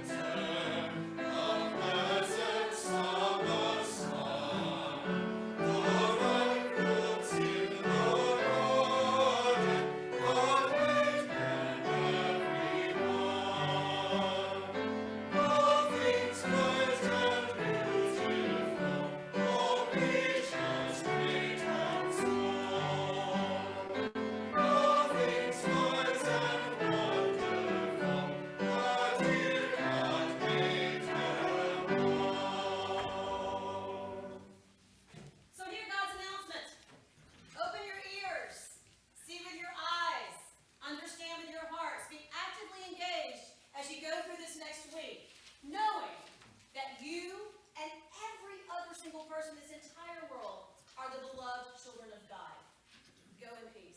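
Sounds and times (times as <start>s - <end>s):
choir singing: 0.0s - 34.6s.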